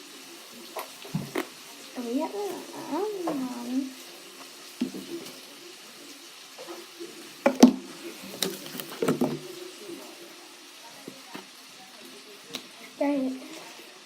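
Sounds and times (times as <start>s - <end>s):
objects knocking and clattering: 7.4s - 7.8s, 8.4s - 9.4s.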